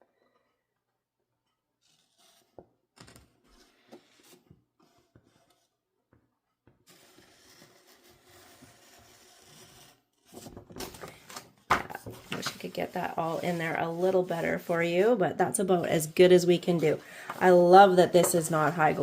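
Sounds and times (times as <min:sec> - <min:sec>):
paper rustling: 0:06.9 - 0:15.0
paper crinkling and tapping: 0:10.2 - 0:14.7, 0:15.8 - 0:19.0.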